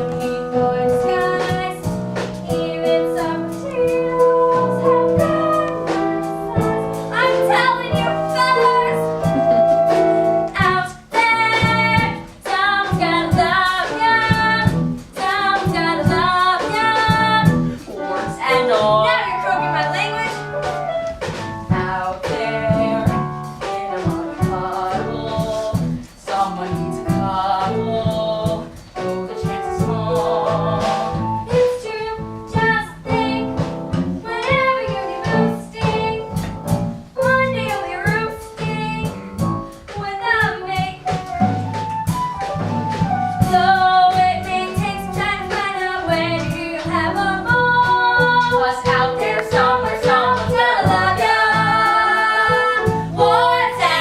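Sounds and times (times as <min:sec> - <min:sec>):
instrumental accompaniment: 0:00.0 - 0:54.0
voices singing with vibrato: 0:43.5 - 0:54.0.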